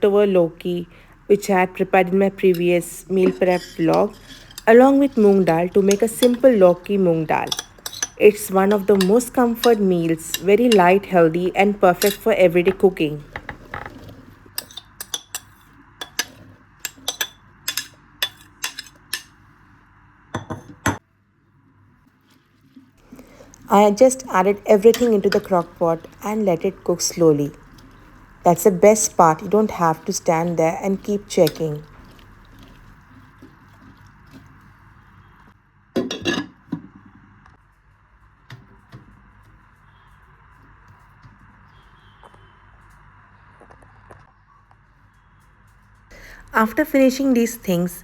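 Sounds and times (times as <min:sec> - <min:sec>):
kitchenware clattering: 0:02.4 - 0:19.3, 0:20.4 - 0:21.0, 0:23.1 - 0:32.9, 0:36.0 - 0:36.8
utensils and dishes clinking: 0:02.4 - 0:19.4, 0:23.1 - 0:33.0, 0:36.0 - 0:36.6.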